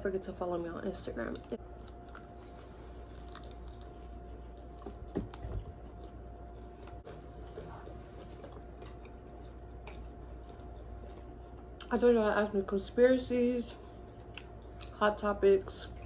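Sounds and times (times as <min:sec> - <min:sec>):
faint steady hum: 0:00.0 - 0:16.0
person chewing food: 0:01.4 - 0:11.9, 0:13.9 - 0:15.0.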